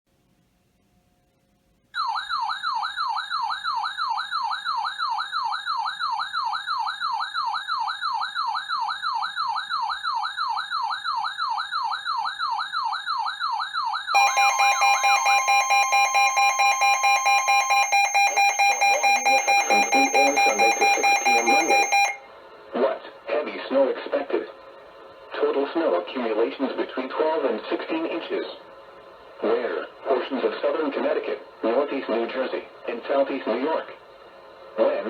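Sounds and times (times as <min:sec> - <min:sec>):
pulsing electronic alarm: 0:02.0 - 0:22.2.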